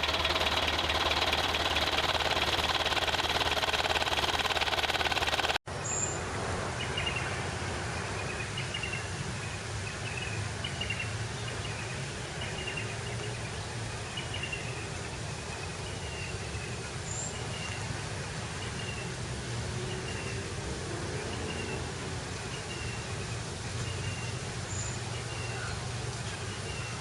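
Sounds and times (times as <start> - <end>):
small motor humming: 0.0 - 5.6
outdoor background hiss: 0.0 - 27.0.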